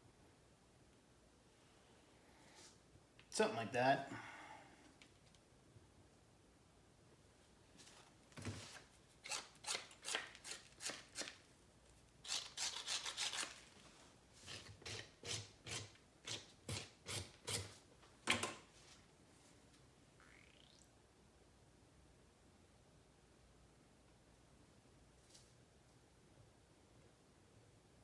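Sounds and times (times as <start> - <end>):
hand tool rasping on clay: 14.5 - 17.7.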